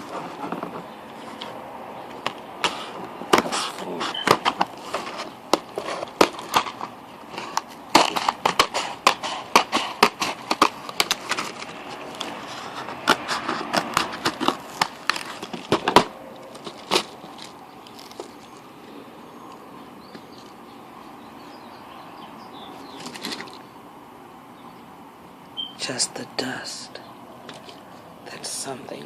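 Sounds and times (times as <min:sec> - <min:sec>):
cardboard box tearing: 0:02.6 - 0:18.5
hard candy pieces clicking: 0:04.2 - 0:12.3.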